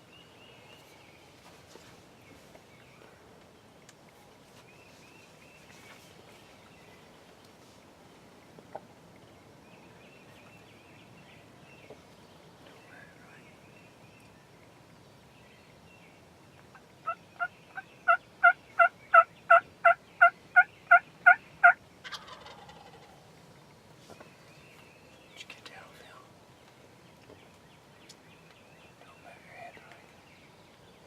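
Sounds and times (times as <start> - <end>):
rattling gobble call: 18.1 - 23.2
turkey hen yelps: 18.1 - 23.2.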